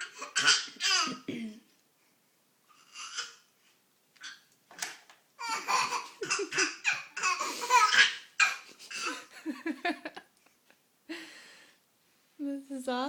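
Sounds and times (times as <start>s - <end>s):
baby laughing: 0.0s - 1.3s, 2.8s - 3.5s, 5.4s - 9.3s.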